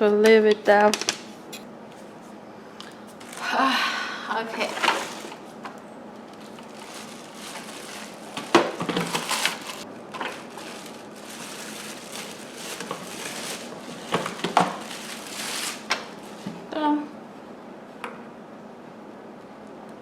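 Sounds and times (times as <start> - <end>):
plastic packaging rustling: 2.8 - 3.8, 4.4 - 16.7.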